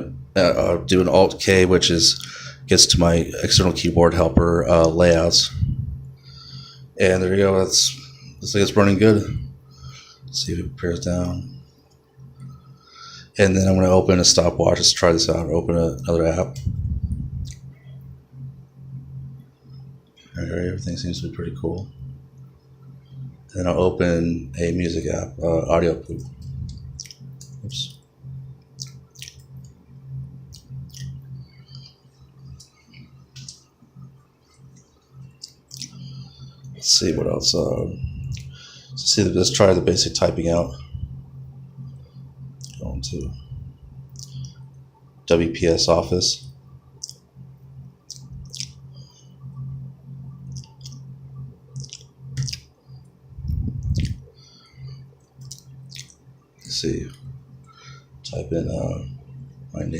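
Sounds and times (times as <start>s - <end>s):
low handling rumble: 0.0s - 6.2s, 13.4s - 34.2s, 35.8s - 46.8s, 53.2s - 56.0s
faint low hum: 0.0s - 59.9s.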